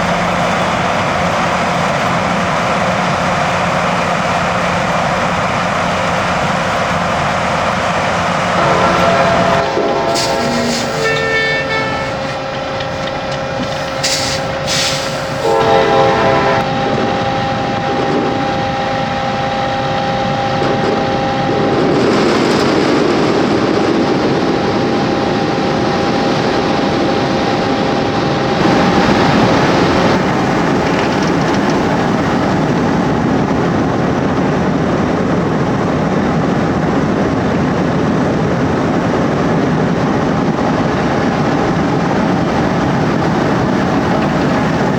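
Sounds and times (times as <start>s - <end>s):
harvesting machinery rattle and rumble: 0.0s - 16.7s, 28.6s - 44.9s
steady machine whine: 0.0s - 35.0s.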